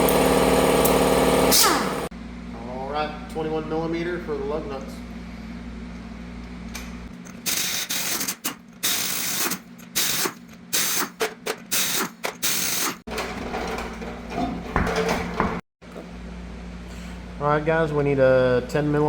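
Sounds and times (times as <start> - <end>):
impact wrench bursts: 0.0 - 2.1, 7.3 - 13.1.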